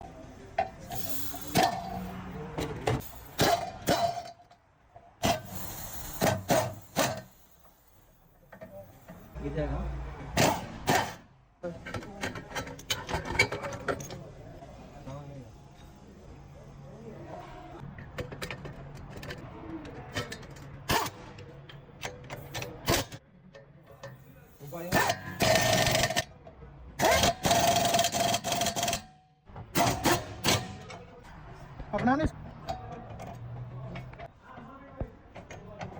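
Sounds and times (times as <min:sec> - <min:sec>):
tools and metal parts clicking: 0:00.6 - 0:04.6, 0:11.8 - 0:14.3, 0:18.0 - 0:26.3, 0:27.0 - 0:31.0, 0:32.6 - 0:34.3.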